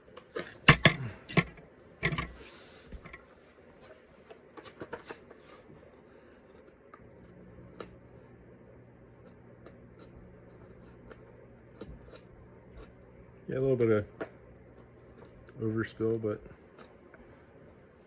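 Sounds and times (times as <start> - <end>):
knocks and clatter of clamp: 0.7 - 2.4.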